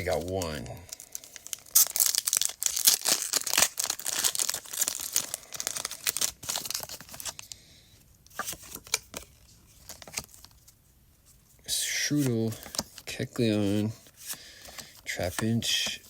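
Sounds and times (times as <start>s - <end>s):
foil pack tearing and crinkling: 0.0s - 7.5s.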